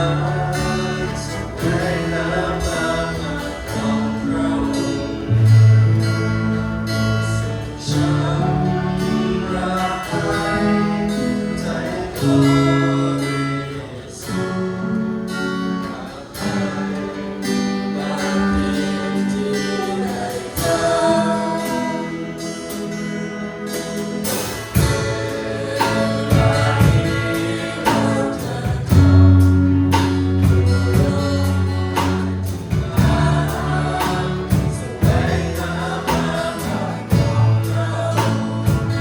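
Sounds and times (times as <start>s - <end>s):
acoustic guitar strumming: 0.0s - 39.0s
person singing: 15.5s - 39.0s.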